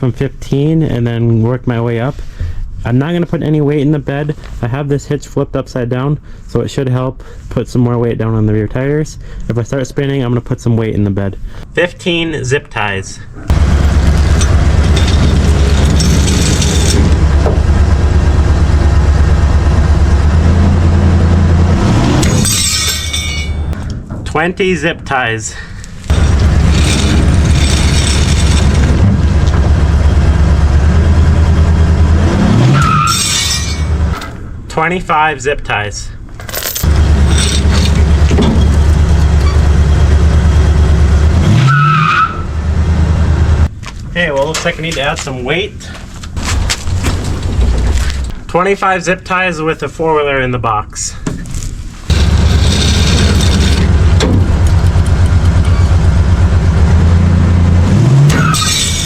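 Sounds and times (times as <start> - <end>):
truck engine under load: 13.5 - 24.3, 25.8 - 34.6, 36.8 - 43.7, 45.9 - 48.5, 51.2 - 59.0.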